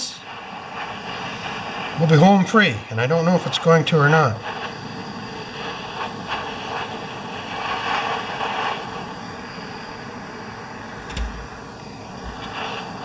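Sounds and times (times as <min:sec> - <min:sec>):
gas torch flame hissing: 0:00.0 - 0:13.0
short knock: 0:11.1 - 0:11.5.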